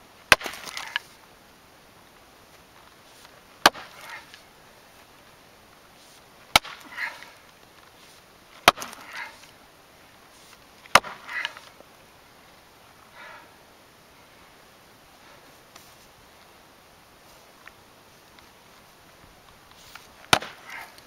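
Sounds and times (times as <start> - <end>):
splitting maul striking wood stump: 0.3 - 1.0, 3.6 - 4.4, 6.5 - 7.4, 8.6 - 9.4, 10.9 - 11.6, 20.3 - 20.9.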